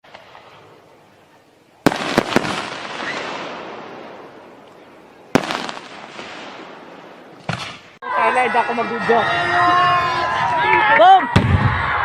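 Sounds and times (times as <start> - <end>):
firework bangs: 1.8 - 8.0
firework cracks: 1.8 - 8.0.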